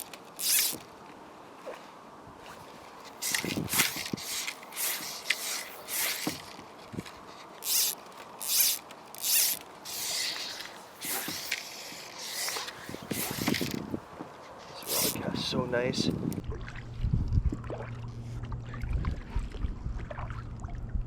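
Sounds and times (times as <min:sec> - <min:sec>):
fly line zipping off reel: 0:00.0 - 0:00.9, 0:03.2 - 0:06.6, 0:07.6 - 0:13.8, 0:14.8 - 0:15.2.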